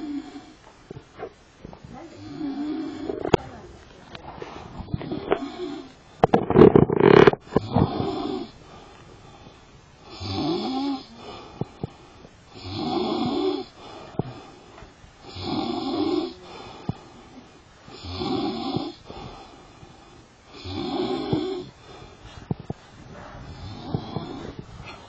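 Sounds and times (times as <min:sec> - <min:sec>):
person snoring: 0:00.0 - 0:00.6, 0:02.2 - 0:03.4, 0:04.8 - 0:08.6, 0:10.0 - 0:14.6, 0:15.2 - 0:19.6, 0:20.5 - 0:22.2, 0:23.1 - 0:25.0.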